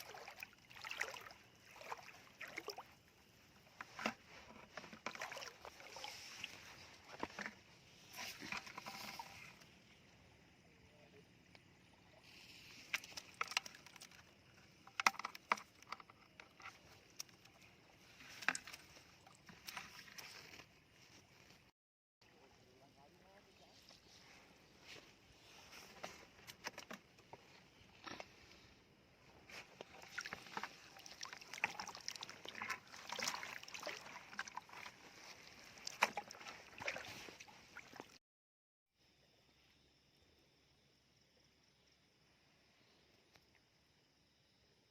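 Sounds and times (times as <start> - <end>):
water splashing: 0.0 - 3.0, 3.9 - 7.5, 29.5 - 38.2
faint hiss: 7.8 - 13.3.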